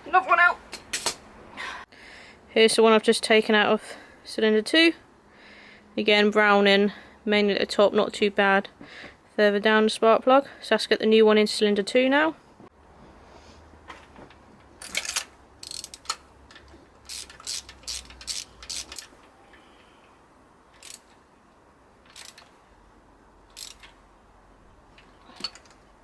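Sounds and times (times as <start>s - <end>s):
ratchet wrench clicking: 14.9s - 16.2s, 17.0s - 19.1s, 20.8s - 21.1s, 22.1s - 22.5s, 23.5s - 24.0s.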